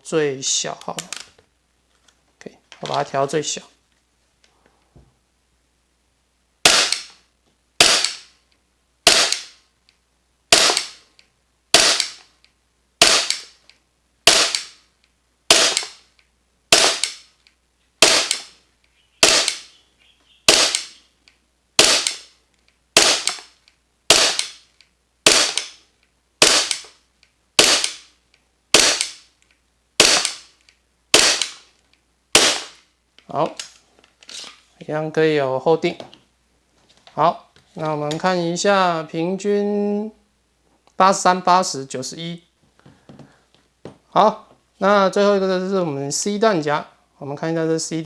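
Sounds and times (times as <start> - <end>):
airsoft pistol shots: 6.6 - 7.2, 7.8 - 8.3, 9.0 - 9.6, 10.5 - 11.0, 11.7 - 12.2, 13.0 - 13.6, 14.3 - 14.8, 15.5 - 16.0, 16.7 - 17.3, 18.0 - 18.5, 19.2 - 19.7, 20.5 - 21.0, 21.8 - 22.3, 23.0 - 23.5, 24.1 - 24.6, 25.2 - 25.8, 26.4 - 26.9, 27.6 - 28.1, 28.7 - 29.2, 30.0 - 30.5, 31.1 - 31.7, 32.3 - 32.8.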